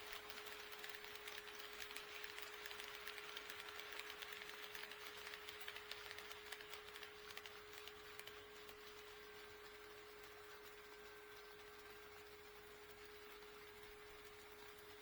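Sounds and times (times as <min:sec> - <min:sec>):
model train wheels clicking: 0:00.0 - 0:15.0.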